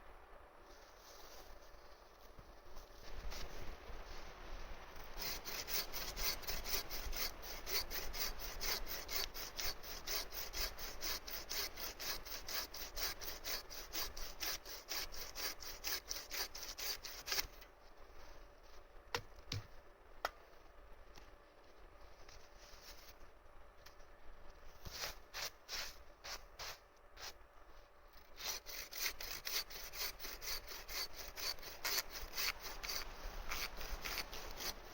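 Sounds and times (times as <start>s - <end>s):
hand saw cutting wood: 5.0s - 17.5s, 28.3s - 34.9s.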